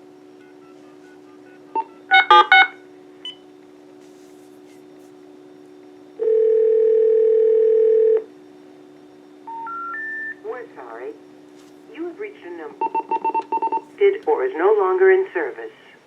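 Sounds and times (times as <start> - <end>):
faint steady hum: 0.0 - 16.0
phone ringback tone: 0.4 - 3.4, 6.2 - 8.2
keypad beep: 12.8 - 13.8.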